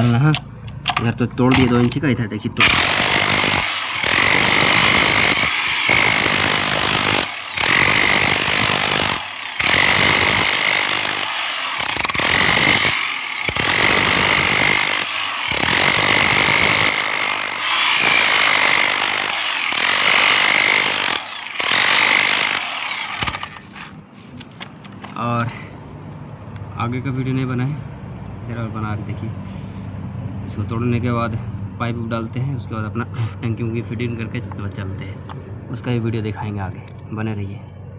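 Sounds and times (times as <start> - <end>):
power tool breaking masonry: 0.0 - 23.9.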